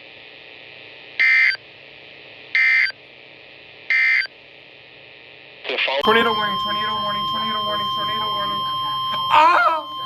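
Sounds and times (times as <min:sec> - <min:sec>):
faint hum: 0:00.0 - 0:10.0
digital data tone bursts: 0:01.2 - 0:01.6, 0:02.6 - 0:03.0, 0:06.0 - 0:10.0.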